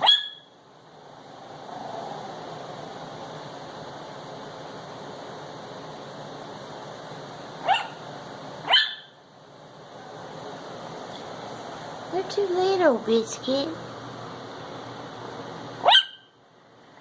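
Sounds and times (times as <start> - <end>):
puppy yapping barks: 0.0 - 0.5, 7.6 - 8.0, 8.6 - 9.2, 15.8 - 16.3
steady background hiss: 0.0 - 17.0.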